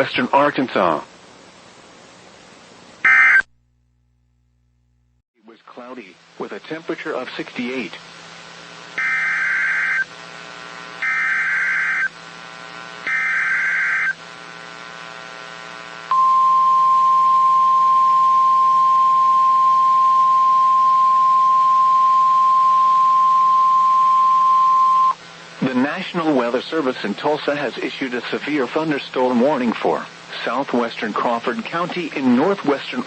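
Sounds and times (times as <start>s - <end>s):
buzzing digital data squawk: 3.0s - 3.5s, 9.0s - 10.1s, 11.0s - 12.2s, 13.0s - 14.2s
steady warning alarm tone: 3.1s - 3.5s, 9.0s - 10.1s, 11.0s - 12.2s, 13.0s - 14.2s.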